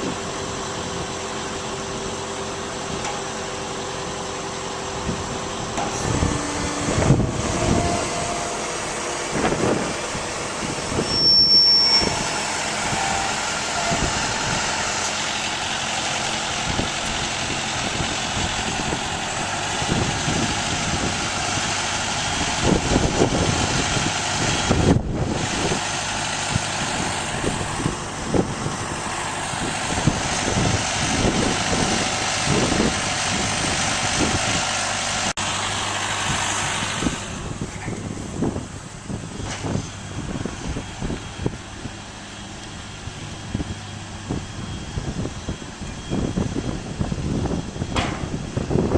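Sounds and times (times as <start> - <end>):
heavy farm machinery running: 0.0 - 48.9
short high beep: 11.0 - 12.2.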